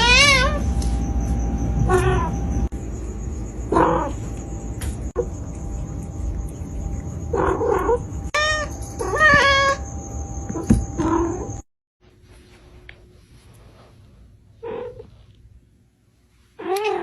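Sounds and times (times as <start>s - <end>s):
cat meowing: 0.0s - 0.6s, 7.4s - 9.8s
steady background hum: 0.0s - 17.0s.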